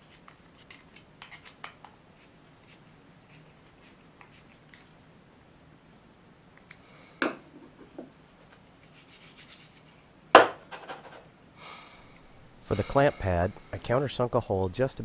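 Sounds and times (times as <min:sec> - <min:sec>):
wooden pieces knocking and rubbing: 0:00.1 - 0:02.0.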